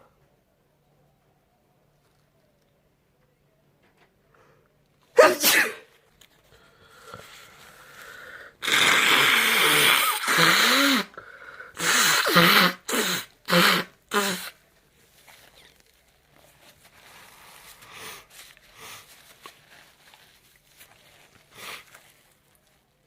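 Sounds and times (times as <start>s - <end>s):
person sneezing: 5.1s - 5.9s, 8.6s - 11.2s, 11.8s - 14.6s
breathy sniffs: 21.4s - 22.2s.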